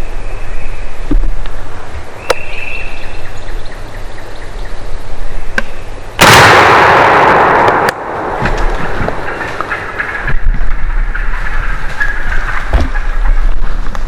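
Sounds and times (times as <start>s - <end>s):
shotgun shot with echo: 6.2s - 10.2s.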